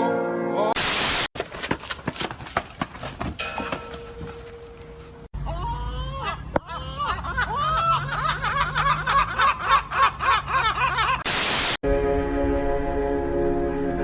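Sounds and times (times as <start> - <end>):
loud static: 0.8 - 1.3, 11.2 - 11.8
ominous music chord: 11.8 - 14.0.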